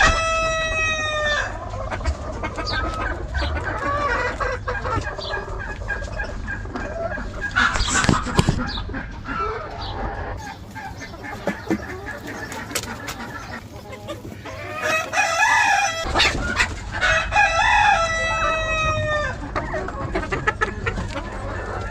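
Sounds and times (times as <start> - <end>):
rooster crowing: 0.0 - 1.5, 14.8 - 16.1, 17.0 - 19.3
chickens clucking: 0.0 - 21.9.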